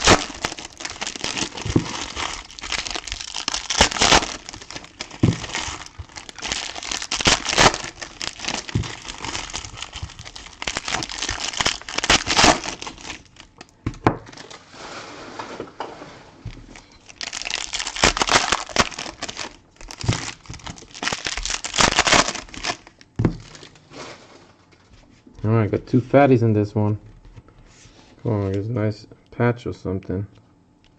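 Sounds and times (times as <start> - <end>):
plastic wrappers crinkling and tearing: 0.0 - 14.6, 16.5 - 23.9.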